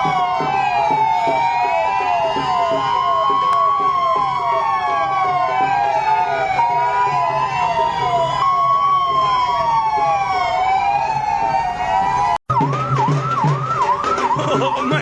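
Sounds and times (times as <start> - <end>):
ambulance siren wailing and yelping: 0.0 - 15.0.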